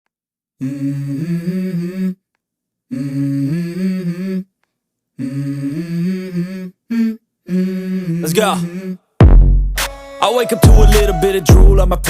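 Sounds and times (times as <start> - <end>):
person humming a melody: 0.6 - 2.2, 2.9 - 4.5, 5.2 - 9.0, 10.3 - 12.0.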